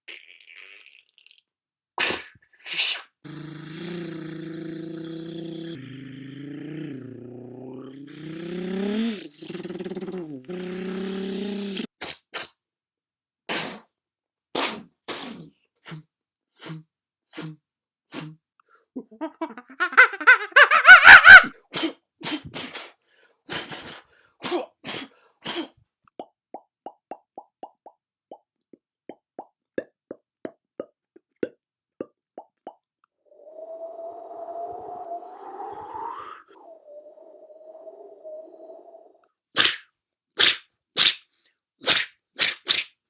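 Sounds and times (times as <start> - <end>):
mouth pops and clicks: 0.0 - 3.0, 25.5 - 32.9, 39.6 - 39.8, 40.4 - 41.2, 41.8 - 42.9
burst of vocal noise: 2.0 - 12.5, 33.3 - 39.8.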